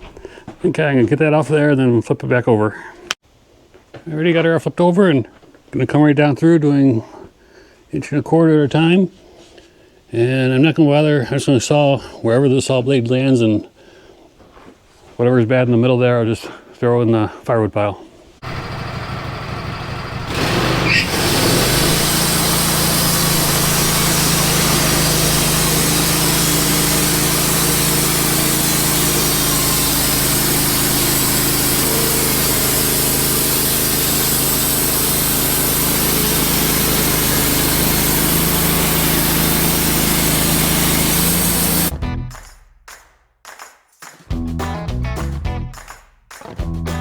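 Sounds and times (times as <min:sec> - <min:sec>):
band blade sawing log: 0:18.4 - 0:41.9
sawmill motor running: 0:18.4 - 0:41.9.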